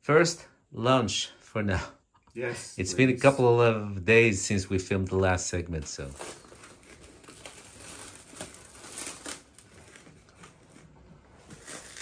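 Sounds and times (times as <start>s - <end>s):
packaging crinkling and rustling: 5.9s - 12.0s.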